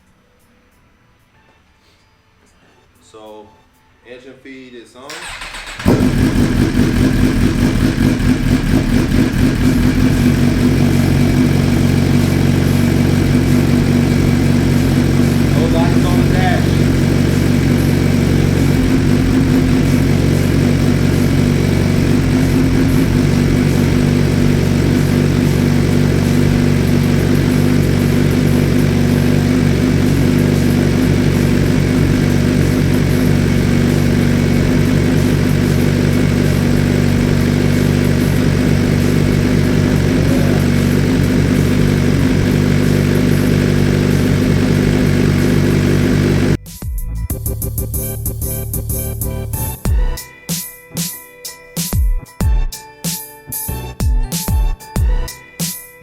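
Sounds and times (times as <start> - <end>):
motorcycle engine idling: 5.1 - 46.6.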